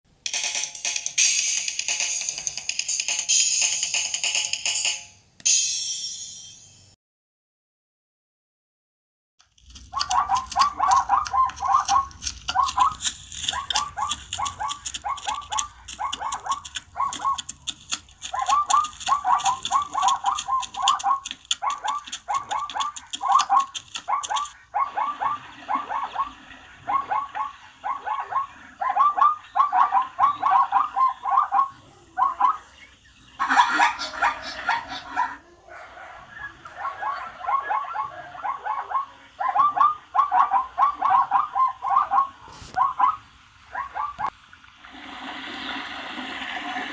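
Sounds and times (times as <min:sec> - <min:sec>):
zebra barking: 0:09.9 - 0:32.8, 0:33.4 - 0:43.2.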